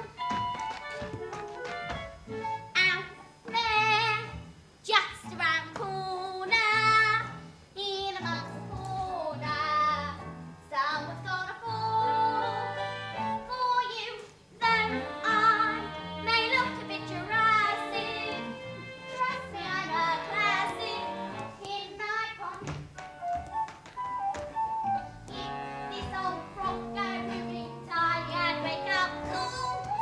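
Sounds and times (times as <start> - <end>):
instrumental accompaniment: 0.0 - 4.8, 14.6 - 30.0
young performers singing: 10.9 - 22.7, 25.4 - 30.0.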